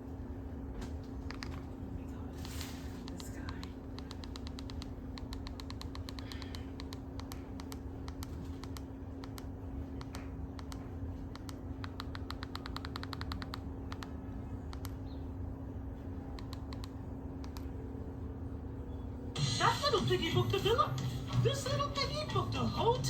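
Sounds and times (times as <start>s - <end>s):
low hum: 0.0s - 23.0s
rapid light clicks: 1.0s - 1.7s, 2.5s - 15.0s, 16.4s - 17.7s.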